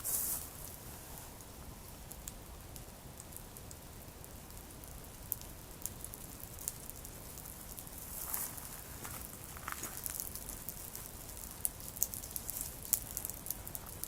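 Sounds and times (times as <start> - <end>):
campfire crackling: 0.0 - 14.0.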